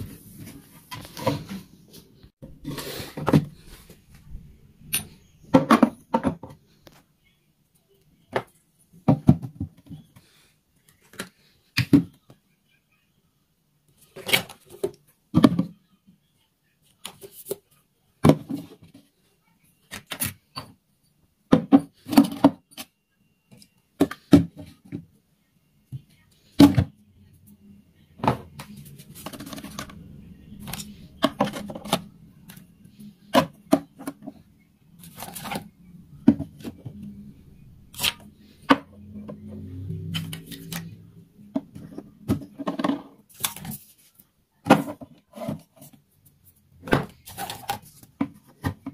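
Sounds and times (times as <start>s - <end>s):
low steady hum: 25.3s - 42.6s
objects clicking and knocking: 28.2s - 34.4s.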